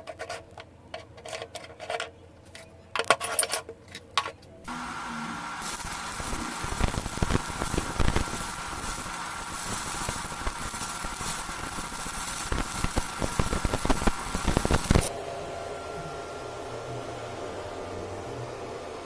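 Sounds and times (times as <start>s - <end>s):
metal parts clinking: 1.0s - 4.5s
hissing workshop machine: 4.7s - 19.0s.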